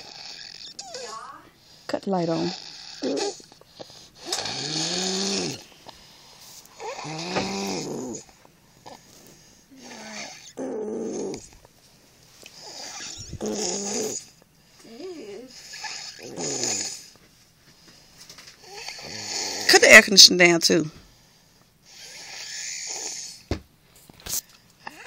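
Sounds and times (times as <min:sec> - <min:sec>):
child snoring: 0:00.0 - 0:05.7, 0:06.8 - 0:09.0, 0:09.7 - 0:11.5, 0:12.6 - 0:17.1, 0:18.6 - 0:19.8, 0:21.9 - 0:23.5.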